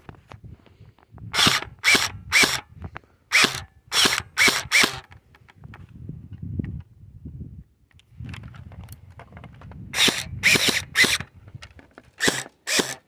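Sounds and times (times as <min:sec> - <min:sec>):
motor and gearbox whine: 0:03.3 - 0:05.1, 0:10.0 - 0:11.3, 0:12.2 - 0:13.0
airsoft rifle shots clacking: 0:12.2 - 0:13.0.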